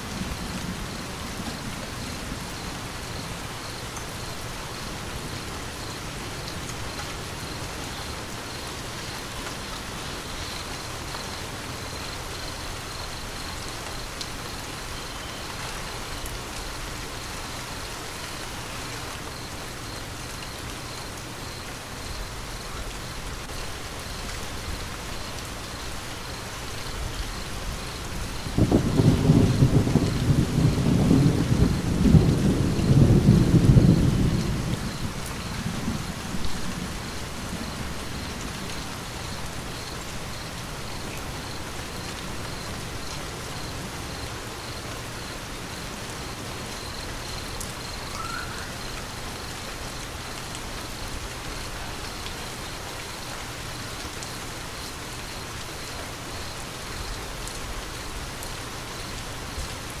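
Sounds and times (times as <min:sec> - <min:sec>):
steady rain falling: 0:00.0 - 1:00.0
thunder rolling: 0:27.3 - 0:40.4.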